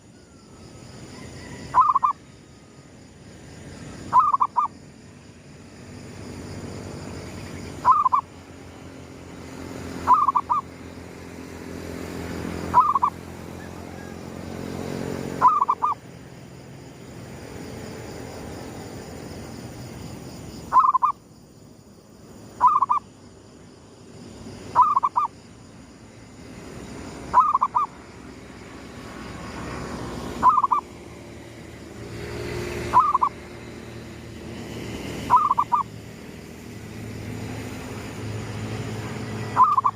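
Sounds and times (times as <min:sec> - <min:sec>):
dove cooing: 0:01.4 - 0:02.2, 0:04.1 - 0:04.7, 0:07.8 - 0:08.3, 0:10.1 - 0:10.7, 0:12.7 - 0:14.2, 0:15.4 - 0:16.0, 0:20.7 - 0:21.1, 0:22.6 - 0:23.0, 0:24.8 - 0:25.3, 0:27.3 - 0:27.9, 0:30.4 - 0:30.9, 0:32.9 - 0:33.4, 0:35.3 - 0:35.9, 0:39.6 - 0:39.9.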